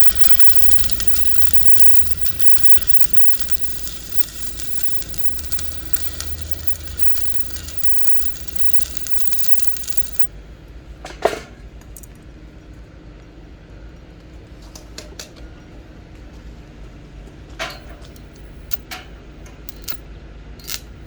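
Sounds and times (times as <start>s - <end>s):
low steady hum: 0.0s - 14.5s.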